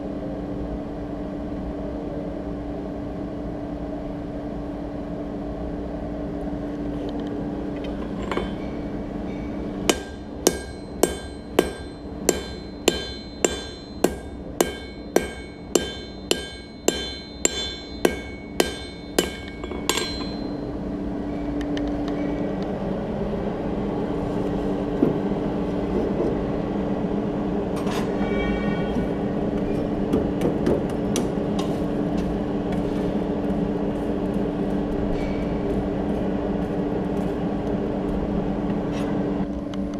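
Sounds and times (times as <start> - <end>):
steady hum: 0.0 - 39.9
ringing metal clink: 8.2 - 20.7
hammer striking steel on anvil: 8.2 - 20.8.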